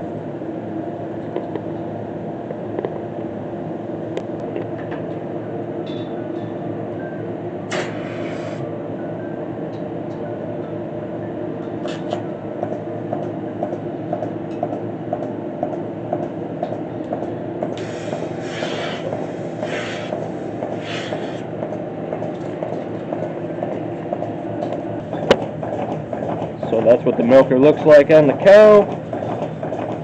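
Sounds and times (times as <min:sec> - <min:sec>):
milking vacuum pump humming: 0:07.0 - 0:09.7, 0:11.6 - 0:30.0
air hissing: 0:07.7 - 0:08.6, 0:17.8 - 0:21.4.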